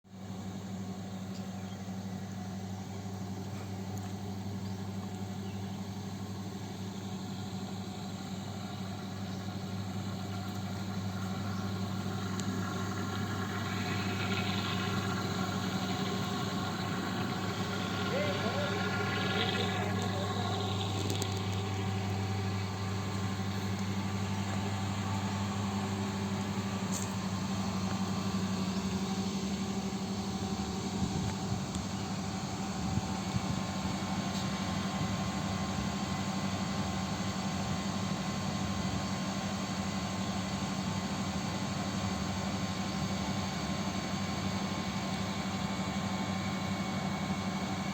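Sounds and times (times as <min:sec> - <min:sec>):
heat pump humming: 0:00.2 - 0:47.9
low drone: 0:08.5 - 0:34.1.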